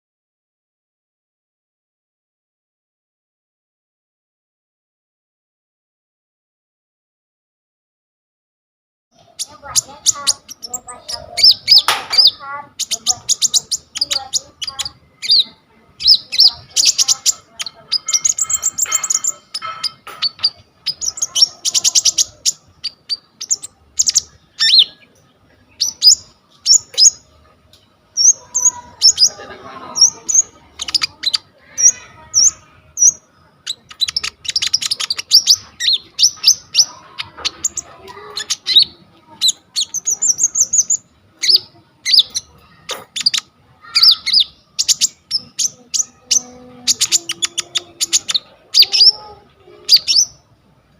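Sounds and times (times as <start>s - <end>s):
songbird singing varied song: 9.2s - 27.4s, 28.1s - 50.5s.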